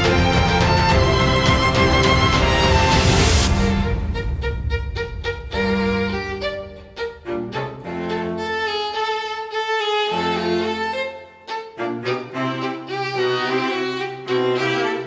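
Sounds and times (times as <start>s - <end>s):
bowed fiddle melody: 0.0s - 15.0s.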